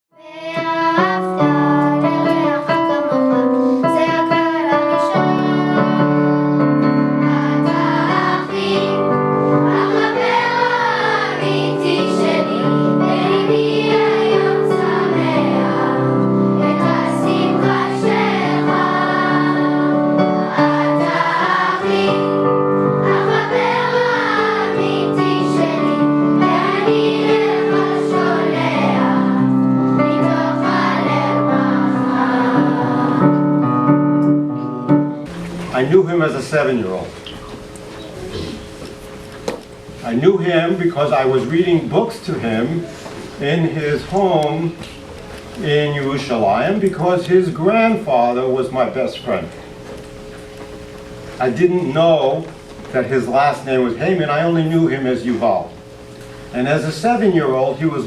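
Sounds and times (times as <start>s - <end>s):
children's choir singing: 0.1s - 34.4s
instrumental accompaniment: 0.2s - 40.1s.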